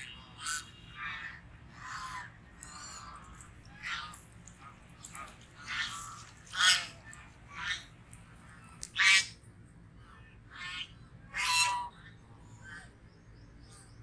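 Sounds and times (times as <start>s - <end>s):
goose honking: 5.1s - 7.8s.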